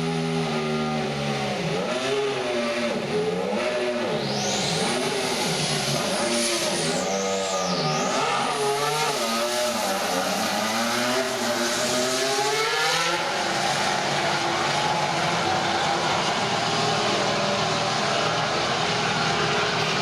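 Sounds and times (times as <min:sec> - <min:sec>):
racing car engine: 0:00.0 - 0:20.0
high turbo whistle: 0:04.0 - 0:20.0.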